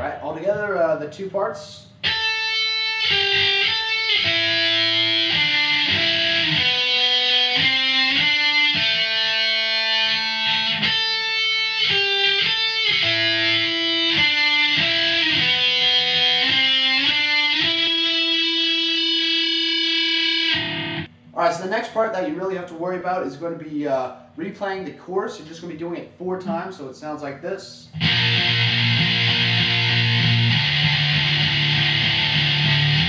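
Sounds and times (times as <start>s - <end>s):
electric guitar melody: 2.0s - 21.1s, 28.0s - 33.0s.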